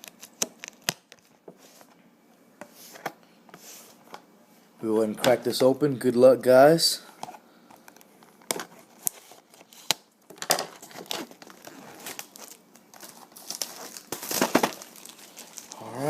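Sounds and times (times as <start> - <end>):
plastic wrap crackling and rustling: 0.0 - 2.0, 7.9 - 16.0.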